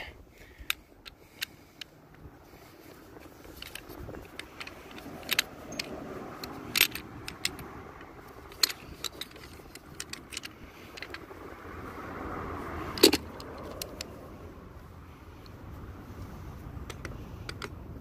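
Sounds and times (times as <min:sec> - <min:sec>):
drill handle clicking and rattling: 0:03.3 - 0:11.3.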